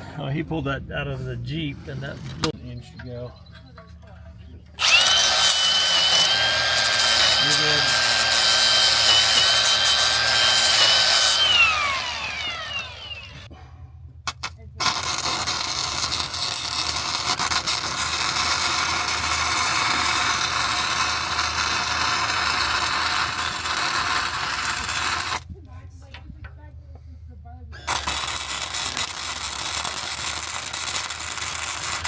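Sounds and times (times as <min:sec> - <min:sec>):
welding arc crackling: 0:04.8 - 0:13.4, 0:14.8 - 0:25.4, 0:27.9 - 0:32.0
power tool whining: 0:04.8 - 0:13.5, 0:14.8 - 0:25.5, 0:27.8 - 0:32.0.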